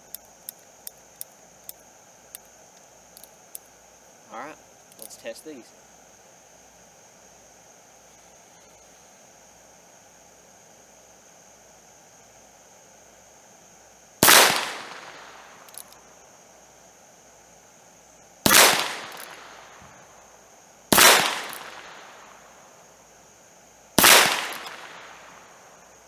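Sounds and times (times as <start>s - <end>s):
revolver gunshots: 14.2s - 15.8s, 18.5s - 20.0s, 20.9s - 22.3s, 24.0s - 25.4s.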